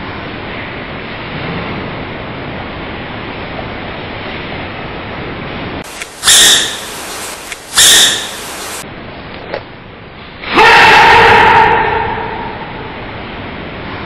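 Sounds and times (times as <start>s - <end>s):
background hiss: 5.8s - 8.8s
high-pitched animal sneeze: 6.2s - 6.9s, 7.8s - 8.4s.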